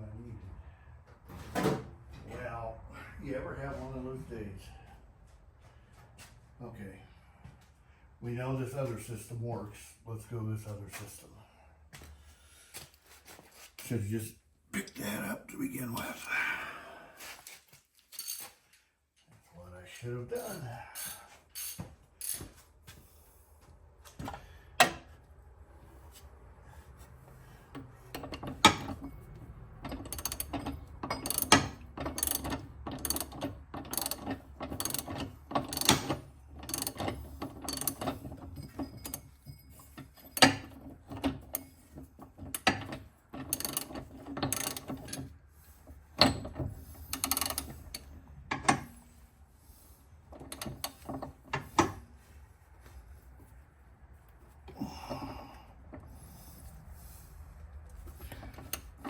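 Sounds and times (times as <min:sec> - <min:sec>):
socket ratchet clicking: 0:29.9 - 0:38.0.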